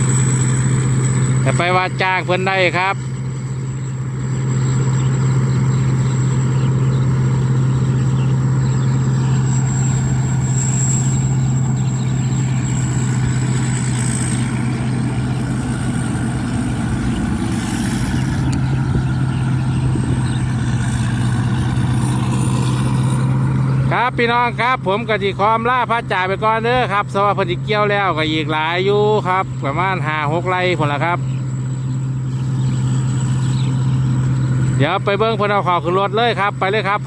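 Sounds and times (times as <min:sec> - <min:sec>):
thin high whine: 0:00.0 - 0:20.2
combine harvester engine drone: 0:00.0 - 0:37.0.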